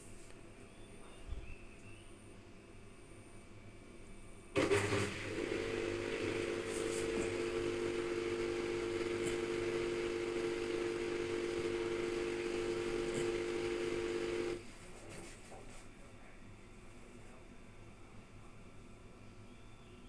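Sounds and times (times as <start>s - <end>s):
washing machine two-tone hum: 4.6s - 14.7s.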